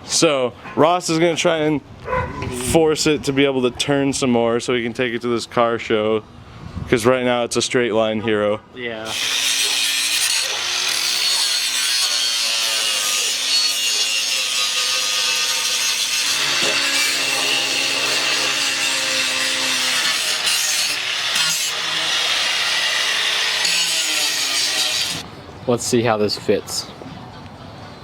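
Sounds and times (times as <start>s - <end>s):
power saw cutting: 9.1s - 25.2s.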